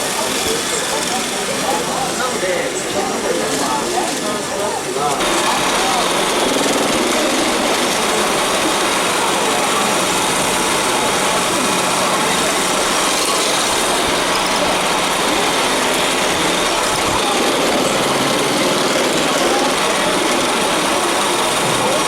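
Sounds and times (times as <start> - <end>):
faint voices: 0.0 - 22.0
robot vacuum motor whir: 5.2 - 22.0.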